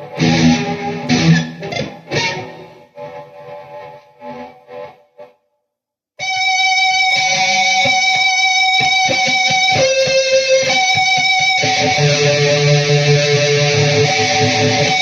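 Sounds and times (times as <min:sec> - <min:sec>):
electric guitar through amplifier: 0:00.0 - 0:05.4, 0:06.2 - 0:15.0.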